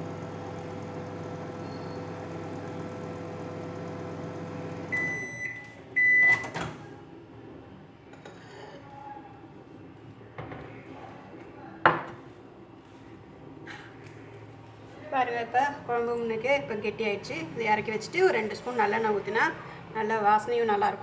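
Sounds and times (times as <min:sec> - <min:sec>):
microwave beeping: 0:00.0 - 0:06.9
microwave oven humming: 0:00.0 - 0:07.6.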